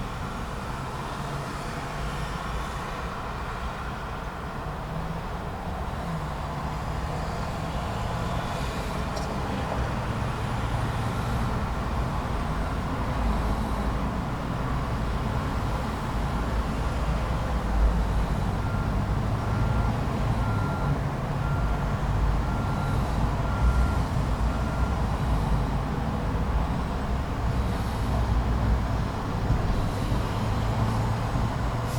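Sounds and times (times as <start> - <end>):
truck and car engines passing: 0.0 - 31.9
reversing alarm beeping: 18.6 - 25.8.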